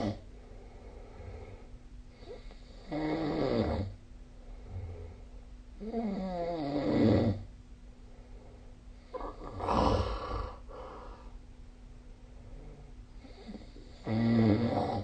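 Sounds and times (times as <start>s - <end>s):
person snoring: 2.2s - 3.9s, 9.1s - 11.3s, 13.2s - 15.0s.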